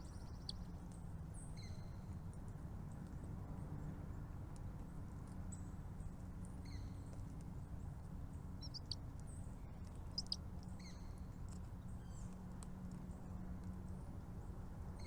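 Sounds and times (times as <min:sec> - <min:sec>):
small birds chirping: 0:00.0 - 0:00.8, 0:05.5 - 0:13.4
low background hum: 0:00.0 - 0:15.0.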